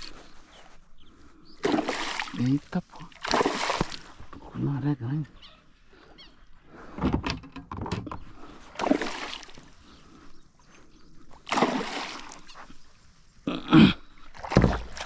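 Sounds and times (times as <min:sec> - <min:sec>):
water splashing: 0:01.6 - 0:04.3, 0:08.7 - 0:09.8, 0:11.4 - 0:12.7, 0:14.2 - 0:15.0.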